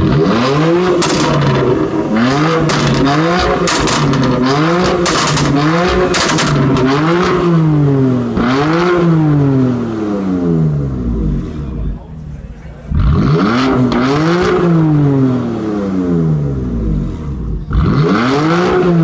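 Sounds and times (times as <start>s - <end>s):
exhaust crackles and pops: 0.0s - 8.7s
car engine revving: 0.0s - 19.0s.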